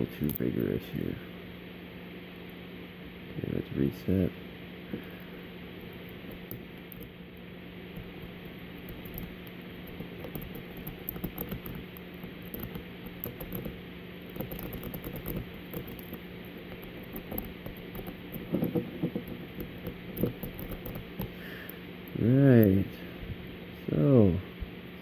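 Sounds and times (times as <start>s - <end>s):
steady low hum: 0.0s - 25.0s
lock pick clicking and scraping: 14.3s - 21.3s.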